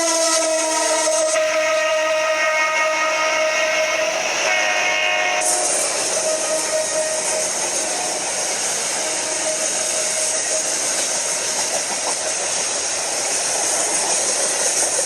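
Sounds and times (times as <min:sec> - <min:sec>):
freight train rumbling past: 0:00.0 - 0:15.0.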